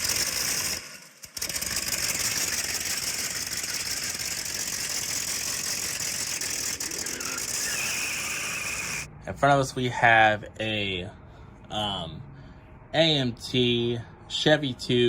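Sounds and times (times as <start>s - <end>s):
engine running with fast rattle: 0.0s - 9.1s.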